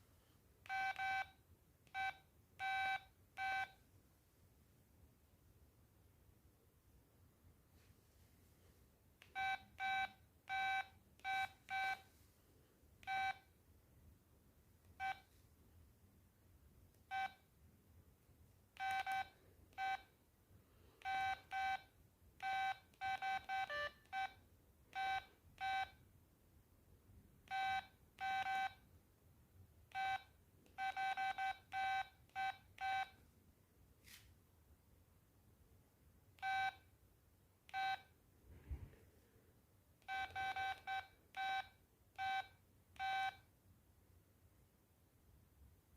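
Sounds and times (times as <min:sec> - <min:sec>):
phone button beeps: 0:09.3 - 0:12.0, 0:13.0 - 0:13.4, 0:18.8 - 0:20.0, 0:25.0 - 0:26.0, 0:36.4 - 0:36.8, 0:37.7 - 0:38.1, 0:40.1 - 0:43.4.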